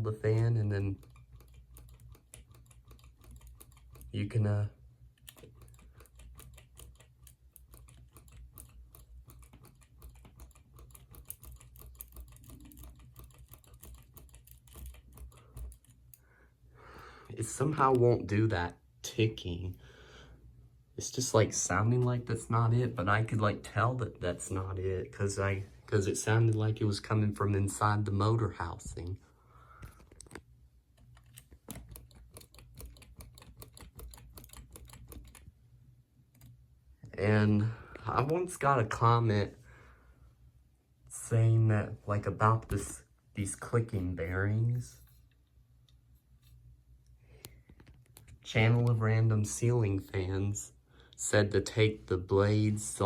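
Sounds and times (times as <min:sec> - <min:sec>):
ceiling fan bearings clicking: 0:00.0 - 0:19.2, 0:29.6 - 0:37.3.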